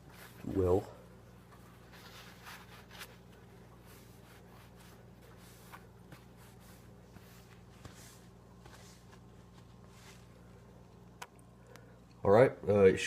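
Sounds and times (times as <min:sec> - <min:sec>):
steady low hum: 0:00.0 - 0:13.0
knife being wiped: 0:01.7 - 0:10.5.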